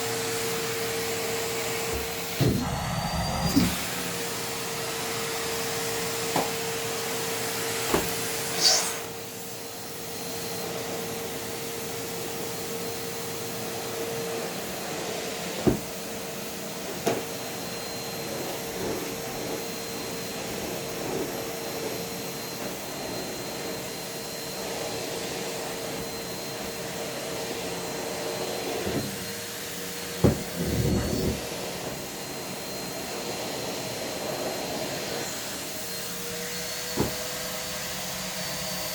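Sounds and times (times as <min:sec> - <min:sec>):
vacuum cleaner motor whine: 0:00.0 - 0:38.9
high squeal of air: 0:01.9 - 0:04.7, 0:08.5 - 0:09.2.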